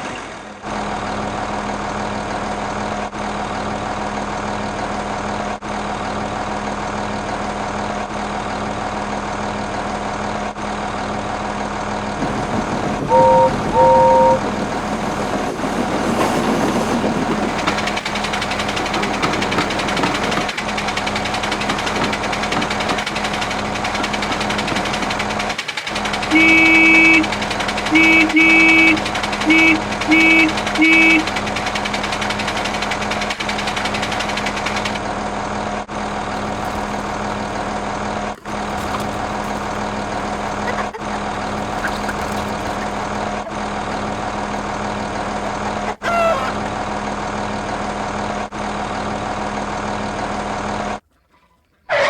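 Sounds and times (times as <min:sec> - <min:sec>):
vehicle engine running: 0:00.7 - 0:51.2
horn honks: 0:13.1 - 0:15.5, 0:26.2 - 0:31.5.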